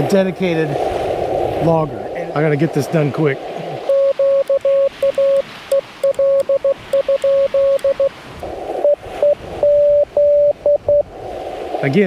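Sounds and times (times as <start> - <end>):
radio band hiss: 0.0 - 10.0, 11.6 - 12.0
morse code sidetone: 3.9 - 8.2, 8.8 - 11.0.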